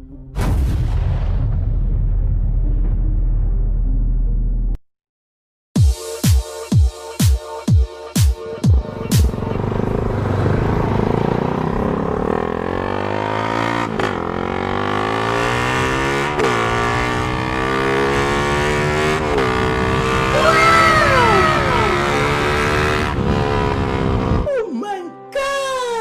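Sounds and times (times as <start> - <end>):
motorcycle engine accelerating: 8.8 - 24.5.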